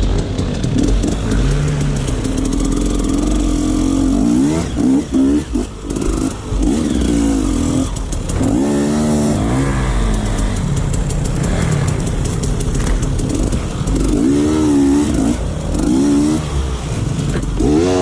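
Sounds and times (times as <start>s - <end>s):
low engine rumble: 0.0s - 17.7s
off-road motorcycle engines revving: 0.0s - 18.0s.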